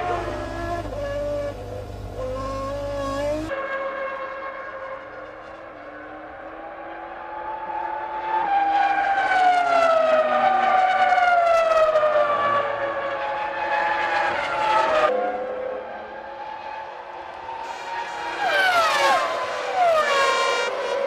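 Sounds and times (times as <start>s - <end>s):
quieter steady engine note: 0.0s - 3.5s
racing car engine at high revs: 0.0s - 21.0s.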